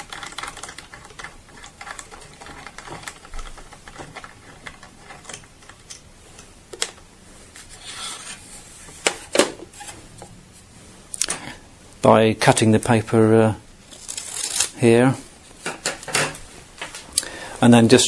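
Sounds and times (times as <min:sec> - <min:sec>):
paper rustling: 0:13.9 - 0:14.8.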